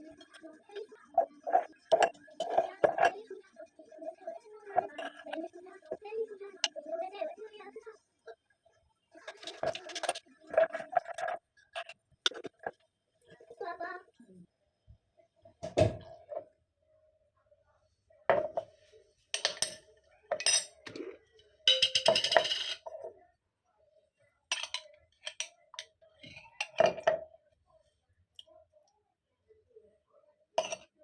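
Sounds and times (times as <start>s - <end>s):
utensils and glassware clinking: 19.4s - 21.1s, 21.7s - 23.0s, 24.5s - 25.6s, 30.6s - 30.9s.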